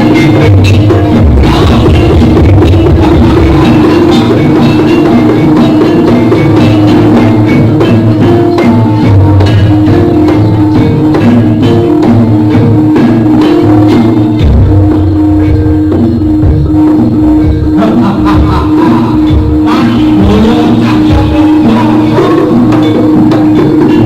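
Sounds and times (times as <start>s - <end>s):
gongs and metallophones playing: 0.0s - 24.0s
steady drum strokes: 0.0s - 24.0s
held low note: 14.0s - 22.8s.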